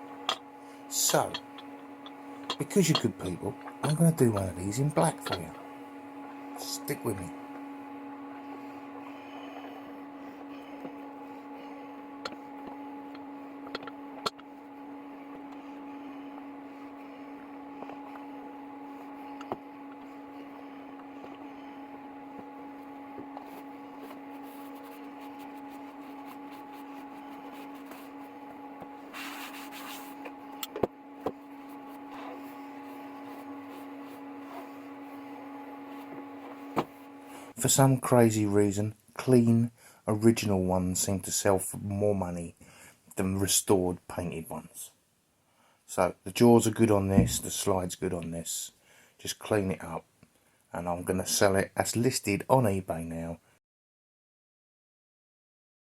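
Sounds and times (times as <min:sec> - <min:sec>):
electric hum: 0:00.0 - 0:37.8, 0:46.9 - 0:47.7.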